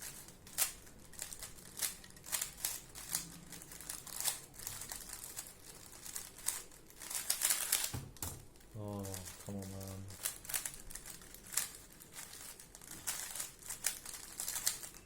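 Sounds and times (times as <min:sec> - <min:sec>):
puzzle cube clacking: 0:00.0 - 0:15.0.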